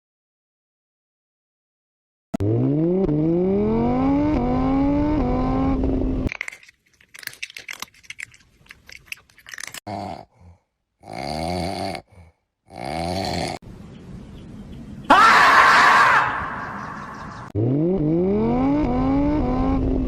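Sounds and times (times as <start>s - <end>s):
car engine accelerating hard: 2.4s - 6.3s, 17.6s - 20.0s.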